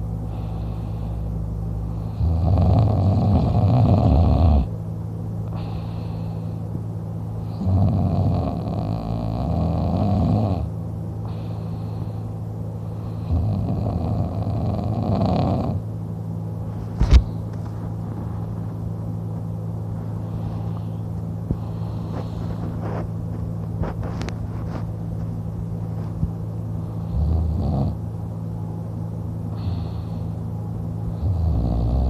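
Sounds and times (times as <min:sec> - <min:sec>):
steady low hum: 0:00.0 - 0:32.0
quiet breathing: 0:00.2 - 0:02.4, 0:05.4 - 0:06.8, 0:10.6 - 0:15.8, 0:19.8 - 0:27.6, 0:29.4 - 0:31.6
man snoring: 0:02.0 - 0:04.7, 0:07.4 - 0:10.7, 0:13.2 - 0:15.8, 0:27.1 - 0:28.0, 0:31.2 - 0:32.0.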